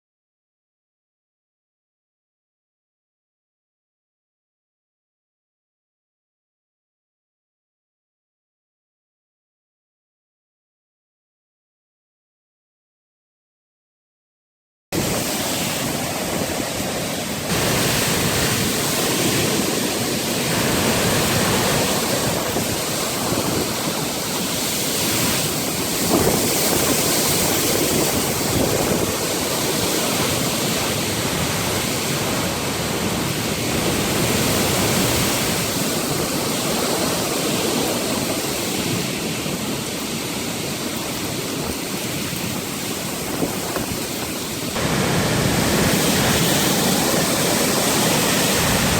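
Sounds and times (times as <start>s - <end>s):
storm winds blowing hard: 15.0s - 48.9s.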